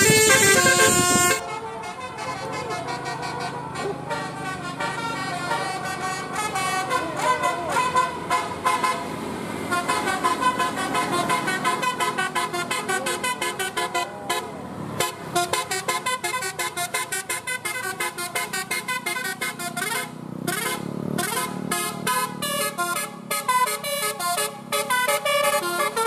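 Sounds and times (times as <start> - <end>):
musical bus horn tune: 0.0 - 26.0.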